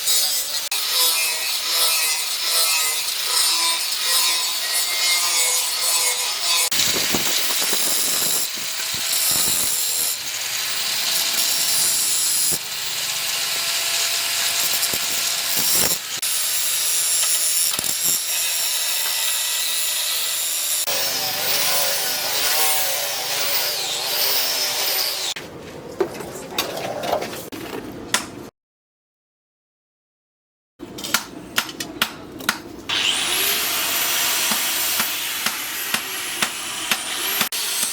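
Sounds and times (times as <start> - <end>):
wood being sawn: 18.6 - 25.4, 32.9 - 37.9.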